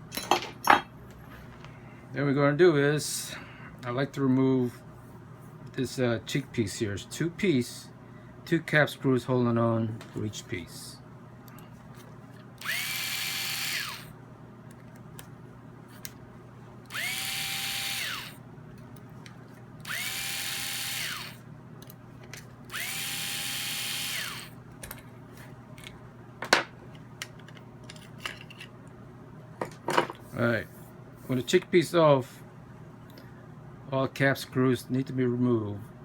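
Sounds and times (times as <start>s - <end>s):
electric screwdriver whining: 12.6s - 14.1s, 16.9s - 18.4s, 19.8s - 21.4s, 22.7s - 24.6s.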